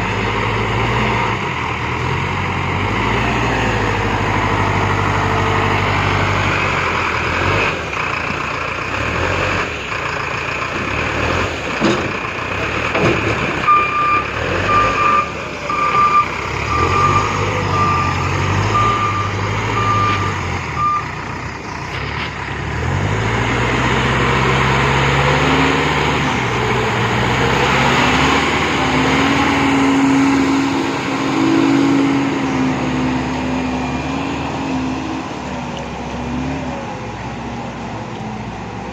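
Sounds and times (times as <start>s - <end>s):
diesel engine revving: 0.0s - 38.9s
reversing alarm beeping: 13.7s - 21.2s.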